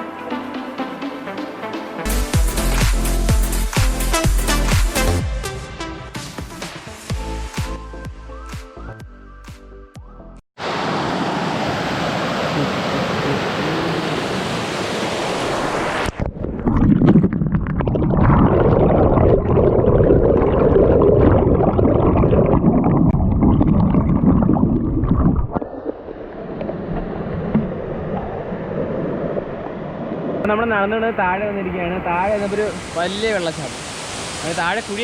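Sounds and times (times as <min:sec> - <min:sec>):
waterfall rushing over rocks: 0:10.6 - 0:16.1, 0:31.8 - 0:35.0.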